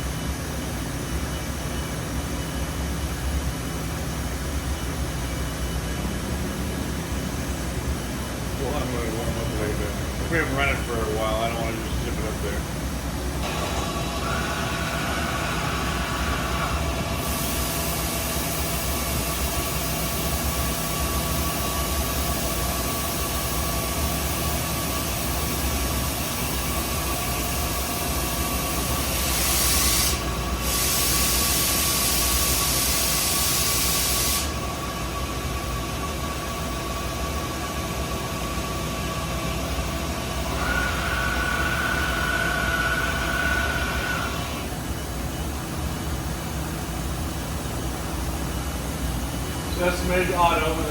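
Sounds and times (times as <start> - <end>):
machine spindle whine: 13.4 - 30.6, 32.2 - 45.6
loud hiss: 14.2 - 18.8, 29.0 - 34.6.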